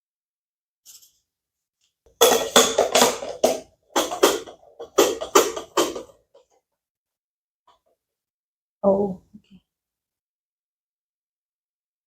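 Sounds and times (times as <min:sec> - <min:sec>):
percussive music with drum hits: 0:02.2 - 0:06.1.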